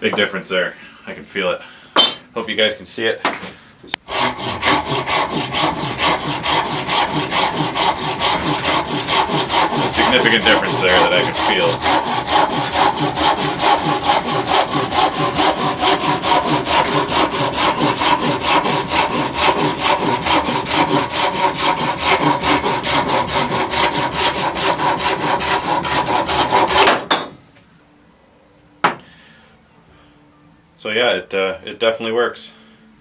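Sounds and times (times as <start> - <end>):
hand saw cutting wood: 4.0 - 27.3.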